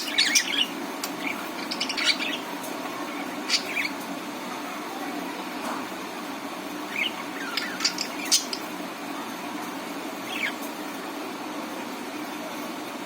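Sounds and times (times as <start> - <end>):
budgerigar chirping: 0.0 - 2.5, 3.1 - 4.0, 6.9 - 8.7.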